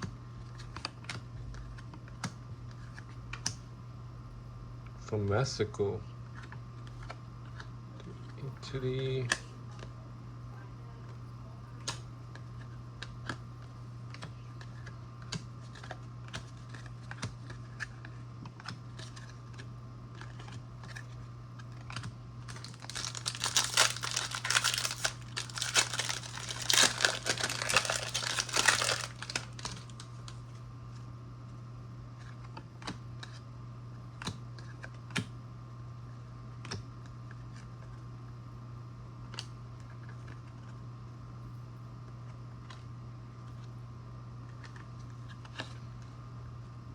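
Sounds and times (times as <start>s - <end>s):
low electrical hum: 0.0s - 46.9s
cards being shuffled: 15.6s - 30.4s
plastic packaging crinkling: 22.4s - 30.4s.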